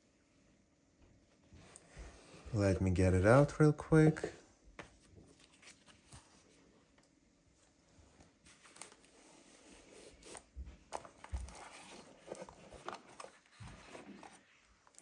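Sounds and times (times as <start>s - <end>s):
soft handling clicks and rustles: 0.9s - 2.5s, 4.7s - 15.0s.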